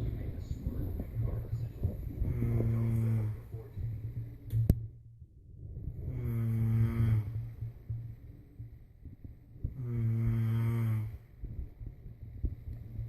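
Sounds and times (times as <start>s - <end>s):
person snoring: 2.2s - 3.6s, 6.0s - 7.6s, 9.7s - 11.2s.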